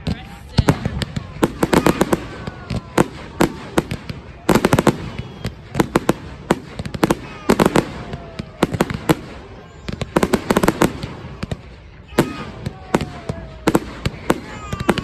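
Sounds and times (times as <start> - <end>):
fireworks exploding: 0.0 - 15.0
faint falling whistle: 4.9 - 5.8.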